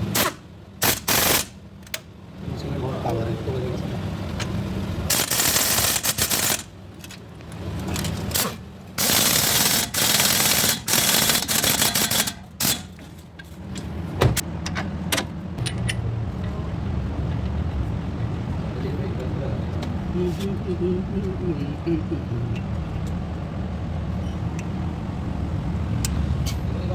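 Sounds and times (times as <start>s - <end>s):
pneumatic impact wrench hammering: 0.0s - 2.0s, 5.1s - 7.2s, 7.8s - 13.2s
steady low hum: 0.0s - 26.9s.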